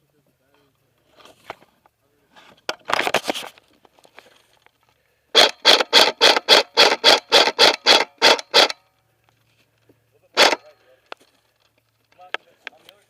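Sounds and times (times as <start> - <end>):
airsoft rifle firing: 5.3 - 8.8, 10.4 - 10.7.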